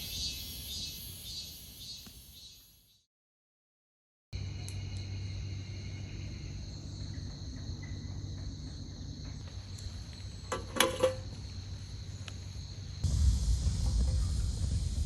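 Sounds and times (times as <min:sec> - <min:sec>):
insects trilling: 0:00.0 - 0:02.8, 0:04.4 - 0:15.0
low hum: 0:13.0 - 0:15.0.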